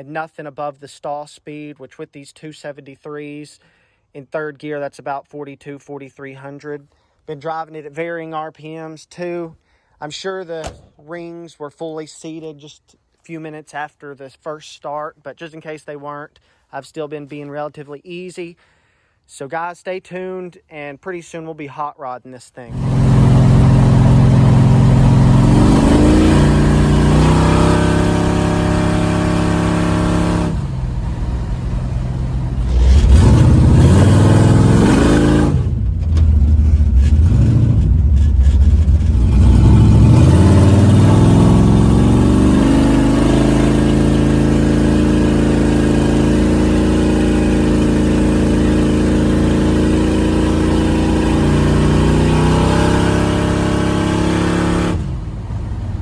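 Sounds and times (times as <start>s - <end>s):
car engine driving: 10.6s - 11.0s, 22.7s - 56.0s.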